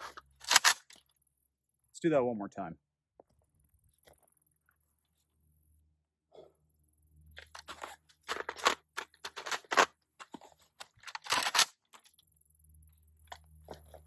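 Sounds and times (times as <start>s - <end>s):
rifle reloading clacks and rattles: 0.0s - 1.0s, 7.4s - 12.1s.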